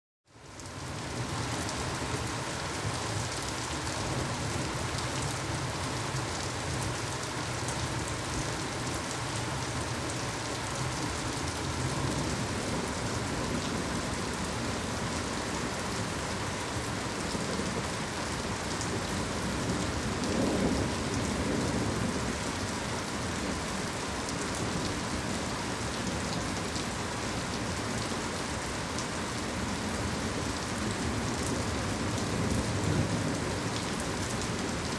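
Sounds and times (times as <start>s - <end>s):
heavy rain pouring: 0.3s - 34.9s
rolling thunder: 19.8s - 22.4s.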